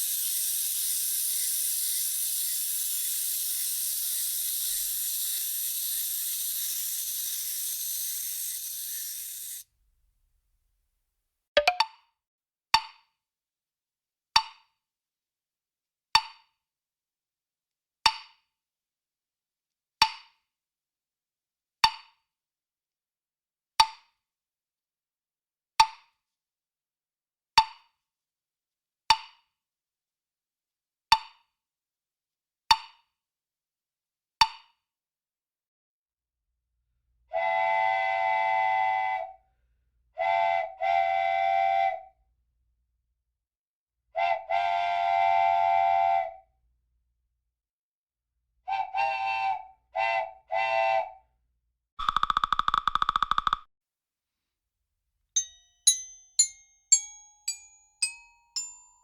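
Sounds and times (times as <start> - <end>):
steam whistle blast: 0.0 - 9.6, 37.3 - 39.4, 40.2 - 42.1, 44.2 - 46.4, 48.7 - 51.2
sharp cartoon knocks: 11.6 - 11.9, 52.0 - 53.7.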